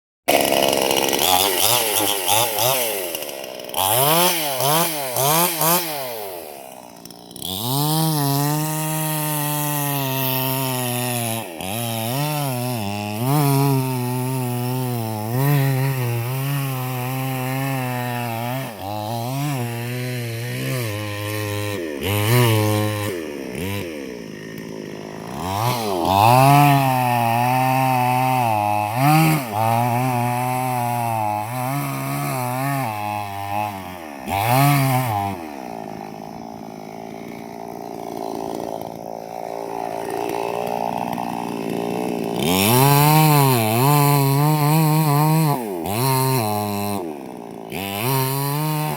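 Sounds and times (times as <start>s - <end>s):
chainsaw cutting wood: 0.3s - 48.9s.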